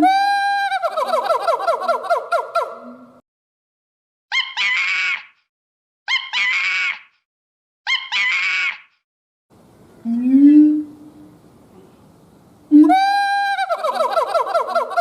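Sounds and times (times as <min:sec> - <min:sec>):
harsh high-pitched animal call: 0:04.3 - 0:05.4, 0:06.1 - 0:07.1, 0:07.9 - 0:08.9.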